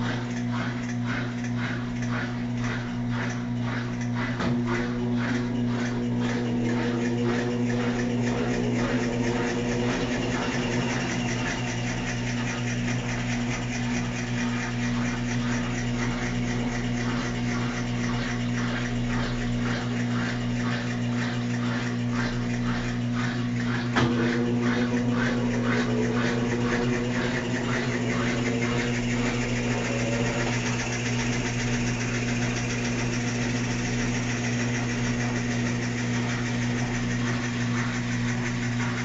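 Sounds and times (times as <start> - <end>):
drum and water swishing: 0.0 - 39.0
washing machine motor hum: 0.0 - 39.0.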